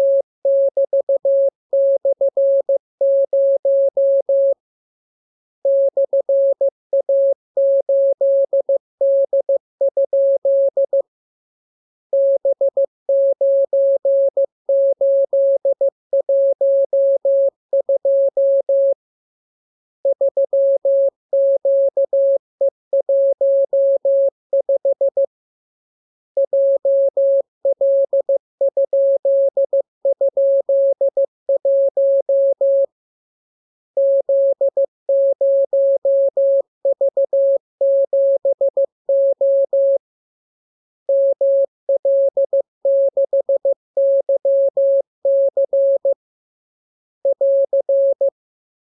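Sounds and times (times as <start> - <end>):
morse code tone: 47.2 - 48.3.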